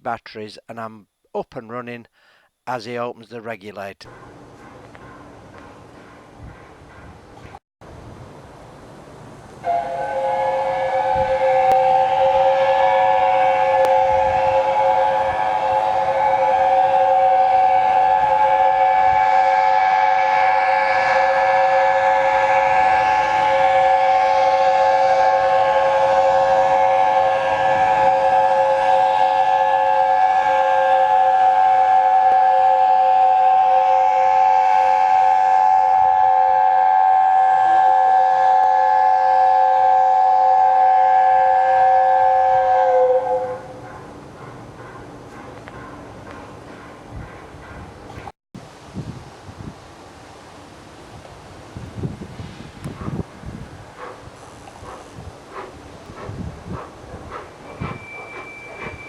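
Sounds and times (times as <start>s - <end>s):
steam locomotive chime whistle: 9.6s - 43.8s, 57.6s - 59.0s.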